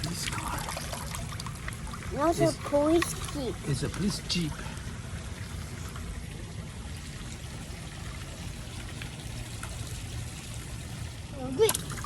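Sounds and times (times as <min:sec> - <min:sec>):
water running steadily: 0:00.0 - 0:12.0.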